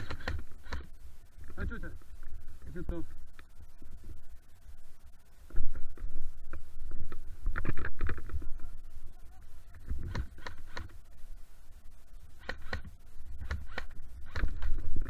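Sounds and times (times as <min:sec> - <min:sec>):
microphone handling noise: 0:05.4 - 0:08.7, 0:09.7 - 0:11.0.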